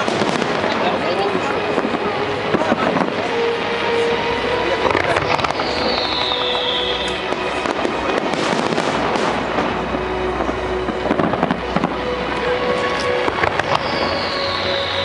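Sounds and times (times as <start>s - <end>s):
faint music: 0.0s - 15.0s
fireworks crackling and banging: 0.0s - 15.0s
falling firework whistle: 4.8s - 9.4s, 12.8s - 15.0s.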